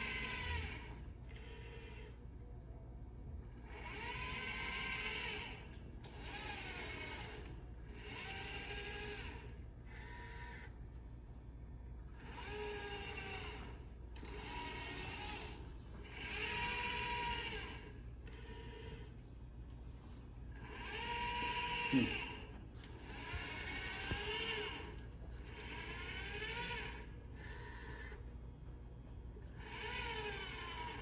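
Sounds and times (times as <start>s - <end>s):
robot arm motors whining: 3.8s - 10.8s, 12.2s - 19.0s, 20.6s - 31.0s.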